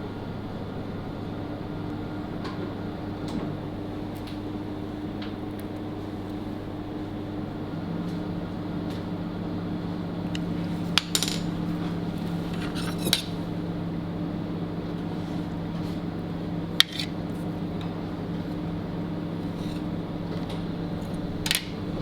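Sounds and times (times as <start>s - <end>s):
low machine hum: 0.0s - 22.0s
utensils clinking on dishes: 12.5s - 13.4s.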